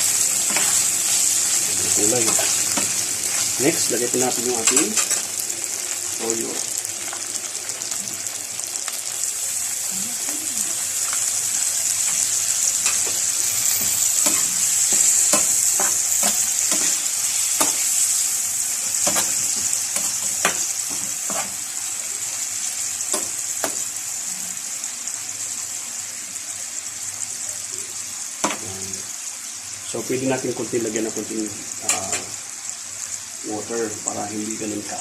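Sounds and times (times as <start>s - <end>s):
pork sizzling in a pan: 0.0s - 35.0s.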